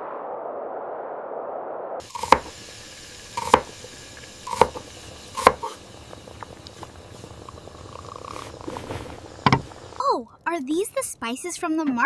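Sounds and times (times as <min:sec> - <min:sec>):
knife chopping on cutting board: 0:02.1 - 0:02.5, 0:03.4 - 0:03.7, 0:04.5 - 0:04.8, 0:05.4 - 0:05.8.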